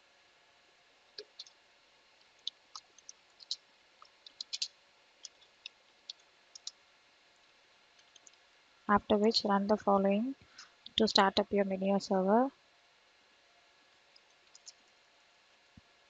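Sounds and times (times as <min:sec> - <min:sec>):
computer keyboard keys clicking: 0:01.2 - 0:01.5, 0:02.4 - 0:05.5, 0:06.1 - 0:06.7, 0:08.0 - 0:08.3, 0:14.2 - 0:14.8.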